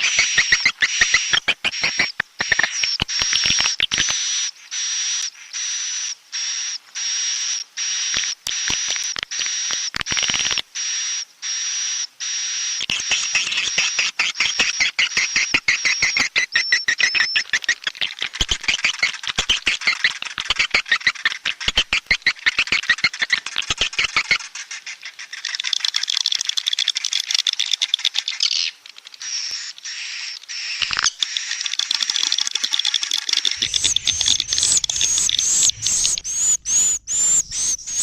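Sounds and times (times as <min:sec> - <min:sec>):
swiftlets twittering chirps: 0:33.6 - 0:38.0
thin high whistle: 0:33.6 - 0:38.0.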